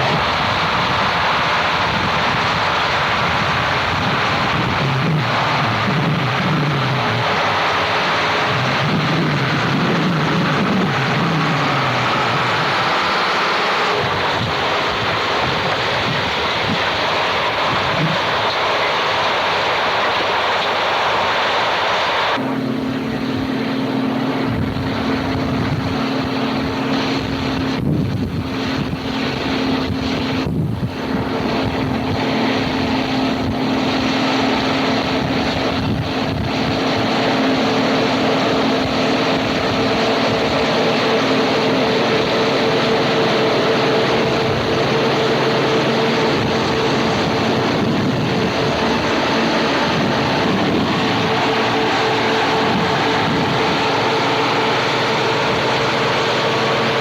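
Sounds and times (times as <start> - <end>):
machine engine humming: 0.0 - 57.0.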